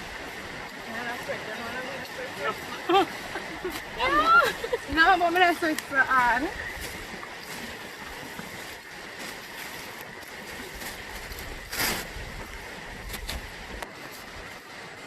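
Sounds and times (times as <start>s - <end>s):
water splash: 0.0s - 14.3s
river water rushing: 0.0s - 15.0s.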